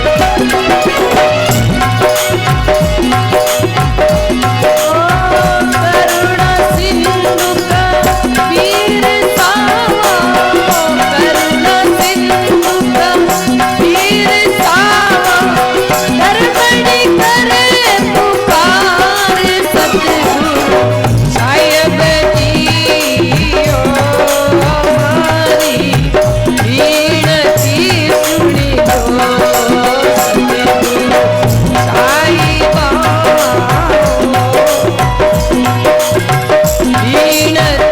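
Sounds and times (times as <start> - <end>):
low drum beats: 0.0 - 11.2, 19.5 - 37.9
hand percussion: 0.0 - 37.9.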